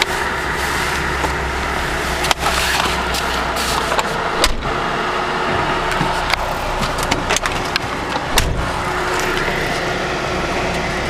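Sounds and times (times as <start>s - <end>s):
car engine idling: 0.0s - 11.0s
sharp clicks and knocks: 5.9s - 8.7s
heavy thump: 8.3s - 8.7s.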